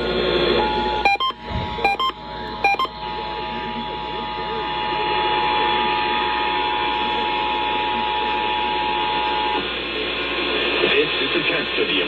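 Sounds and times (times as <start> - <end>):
radio hiss: 0.6 - 12.0
two-tone alert signal: 0.7 - 3.0.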